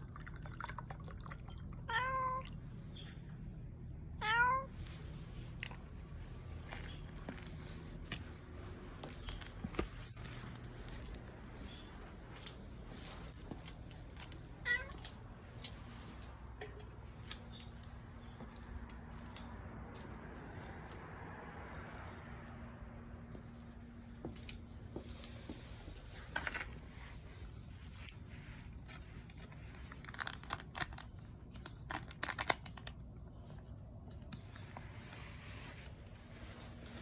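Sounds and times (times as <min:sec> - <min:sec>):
cat meowing: 0:01.8 - 0:02.6, 0:04.2 - 0:04.8, 0:14.5 - 0:15.3.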